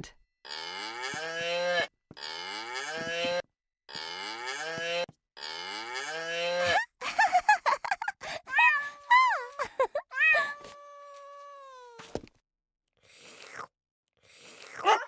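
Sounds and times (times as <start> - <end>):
toy cow mooing: 10.4 - 12.0.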